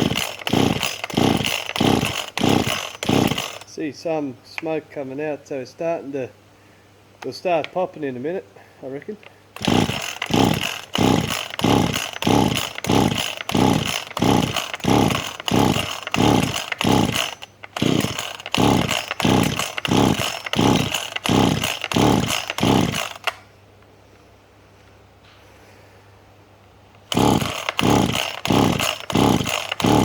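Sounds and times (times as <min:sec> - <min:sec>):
chainsaw recoil starter pulls: 0:00.0 - 0:03.9, 0:07.2 - 0:07.9, 0:09.0 - 0:23.4, 0:27.0 - 0:30.0.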